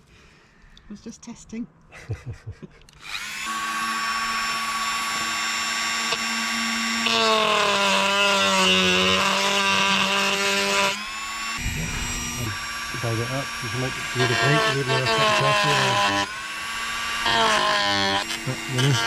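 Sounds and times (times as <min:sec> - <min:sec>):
rotary tool whining: 0:02.9 - 0:19.0
cutting disc rasping on metal: 0:04.4 - 0:19.0.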